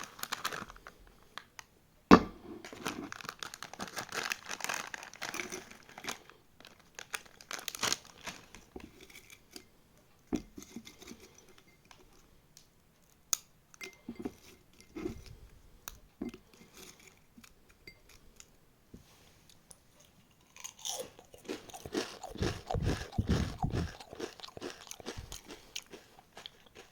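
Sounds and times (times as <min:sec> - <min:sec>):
crisp snack crunching: 0:00.0 - 0:00.8, 0:03.1 - 0:08.7, 0:20.4 - 0:26.9.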